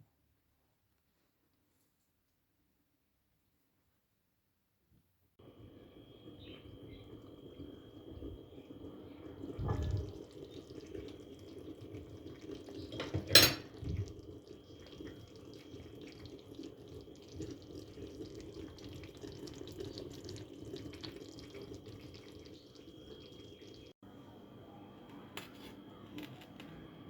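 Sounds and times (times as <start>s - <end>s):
tap water running into sink: 9.4s - 23.8s.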